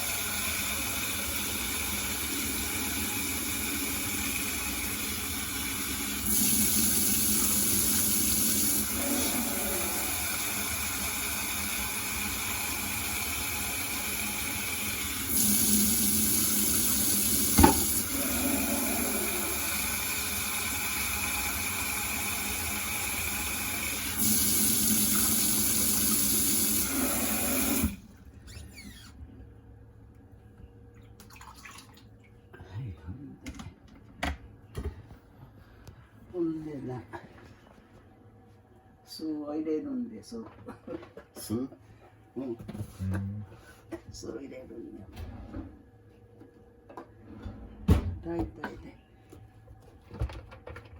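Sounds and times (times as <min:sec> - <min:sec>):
water running from tap: 0:00.0 - 0:28.0, 0:31.2 - 0:32.0.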